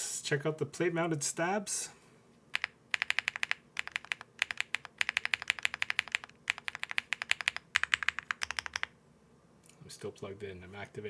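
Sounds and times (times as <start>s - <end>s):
mechanical keyboard clicking: 2.6s - 8.9s.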